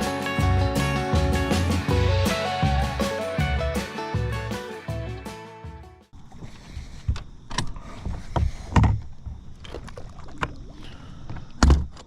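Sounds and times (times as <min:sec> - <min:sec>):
knocks and thumps in a boat: 0:06.2 - 0:12.0.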